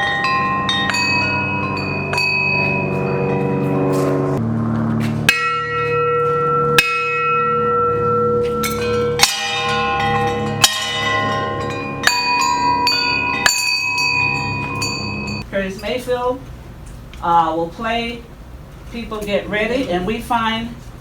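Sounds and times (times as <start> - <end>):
bells of different pitches ringing: 0.0 - 4.4, 5.3 - 16.1.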